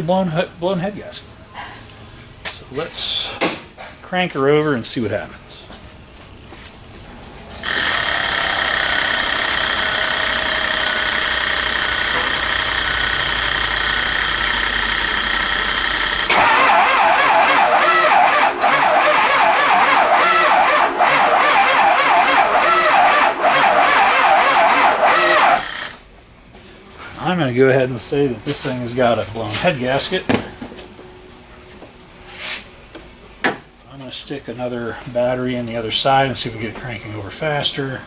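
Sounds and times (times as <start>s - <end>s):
starter cranking diesel engine: 7.6s - 26.0s.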